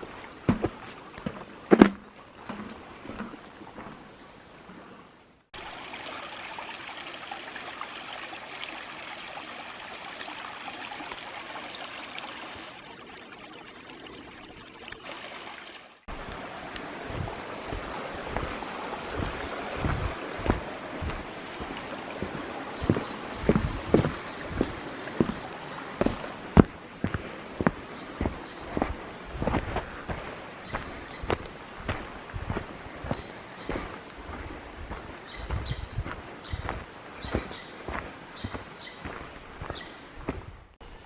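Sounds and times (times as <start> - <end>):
stream flowing over rocks: 0.0 - 4.7, 5.5 - 41.0
low thumps: 17.0 - 25.4.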